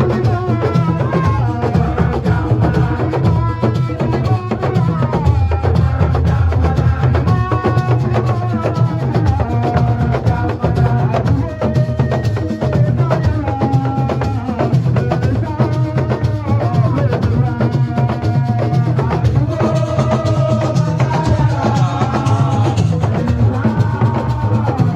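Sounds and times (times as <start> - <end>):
person singing: 0.0 - 24.9
rapid drumming: 0.0 - 24.9.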